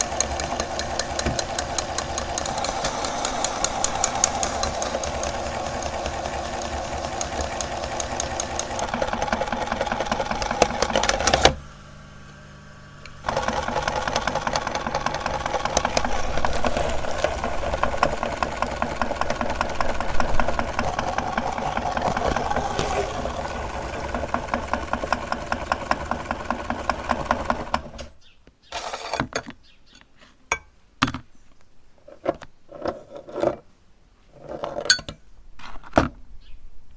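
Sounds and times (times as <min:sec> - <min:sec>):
electric meat grinder running: 0:00.0 - 0:28.1.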